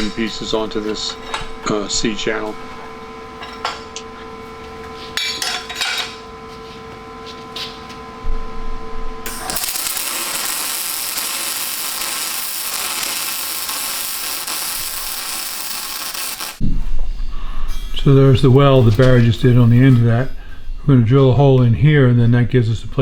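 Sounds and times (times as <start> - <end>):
welding arc hiss: 0.0 - 1.2, 9.3 - 16.6
steady hum: 0.0 - 21.4.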